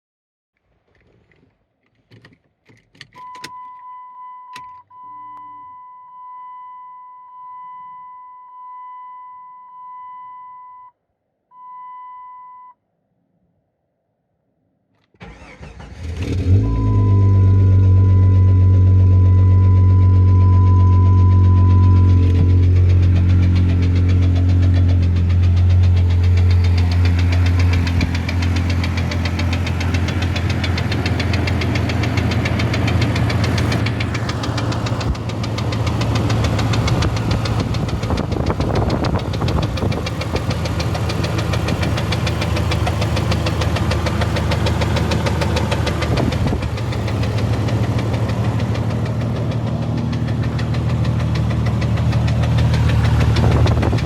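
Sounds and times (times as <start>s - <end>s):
engine running with slow knock: 16.5s - 54.0s.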